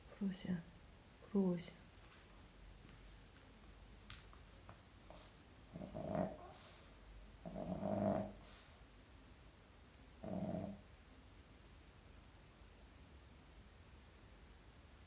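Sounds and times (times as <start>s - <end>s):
pet snoring: 5.1s - 8.8s, 10.2s - 10.9s.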